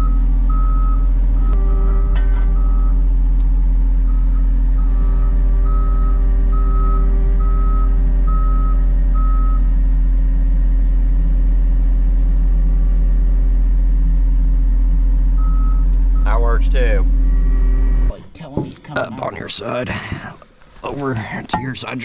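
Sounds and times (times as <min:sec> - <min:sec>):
reversing alarm beeping: 0:00.0 - 0:03.1, 0:04.0 - 0:09.7, 0:15.4 - 0:18.1
diesel engine running: 0:00.0 - 0:19.5.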